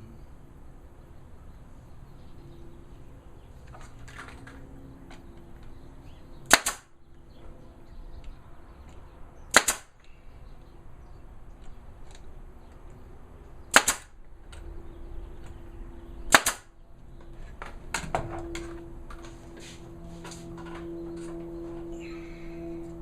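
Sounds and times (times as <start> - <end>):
steady hum: 0.0 - 23.0
nail gun firing: 6.5 - 7.0, 9.5 - 10.0, 13.7 - 14.2, 16.3 - 16.8.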